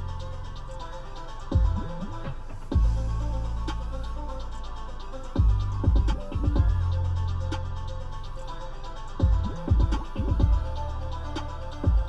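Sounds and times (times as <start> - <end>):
electronic music: 0.0 - 12.0
ticking beat: 0.0 - 12.0
deep bass hits sliding down: 1.5 - 8.3.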